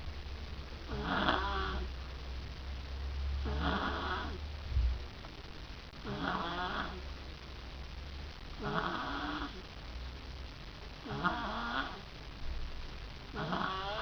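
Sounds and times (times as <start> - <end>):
person snoring: 0.9 - 1.9, 3.4 - 4.4, 6.0 - 7.1, 8.6 - 9.6, 11.0 - 12.1, 13.3 - 14.0
short low thump: 4.7 - 5.0.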